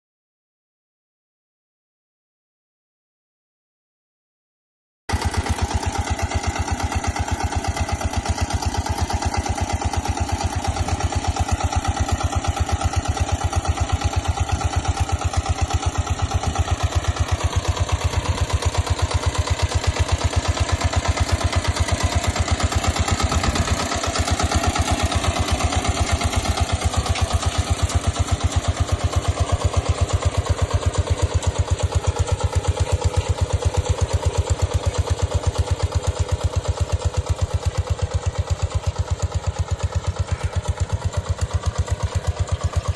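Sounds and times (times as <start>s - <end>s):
tractor engine thumping: 5.1s - 42.9s.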